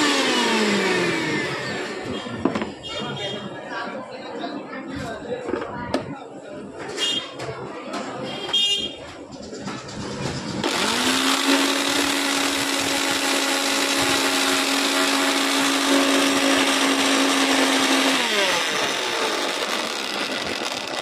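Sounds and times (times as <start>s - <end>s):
small appliance motor whirring: 0.0s - 2.2s, 10.6s - 21.0s.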